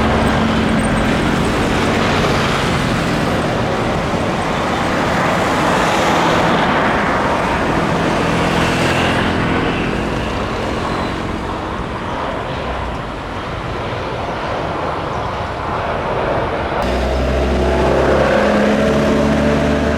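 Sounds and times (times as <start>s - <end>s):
jet engines roaring: 0.0s - 19.9s
faint falling whine: 16.8s - 19.9s.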